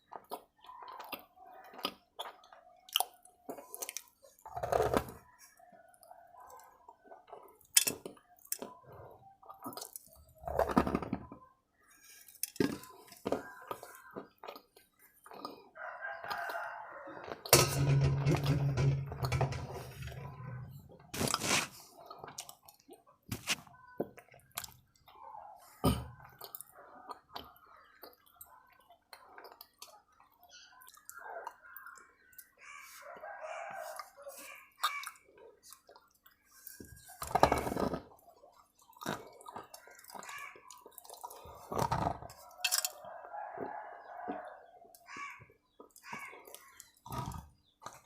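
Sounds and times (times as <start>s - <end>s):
chewing crunches: 0.0s - 11.0s, 11.8s - 17.5s, 25.8s - 32.6s, 33.2s - 48.0s.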